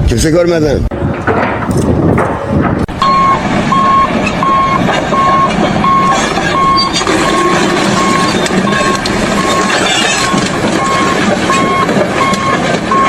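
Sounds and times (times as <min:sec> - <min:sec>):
steady machine noise: 0:00.9 - 0:13.0
reversing alarm beeping: 0:03.0 - 0:13.0.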